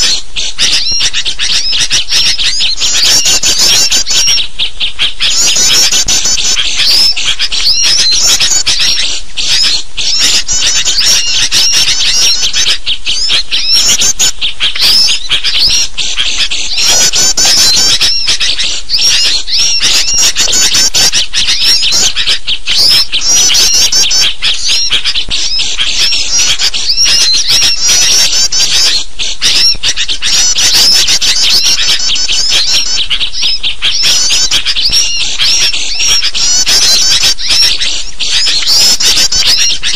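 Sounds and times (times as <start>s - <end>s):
bulbul calls: 0.0s - 39.9s
small songbirds chirping: 0.0s - 39.9s.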